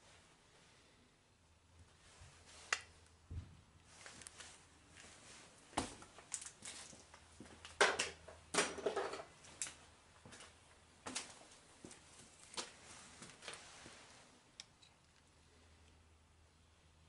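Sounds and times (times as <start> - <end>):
knocks and scrapes of hard parts: 7.8 - 9.3.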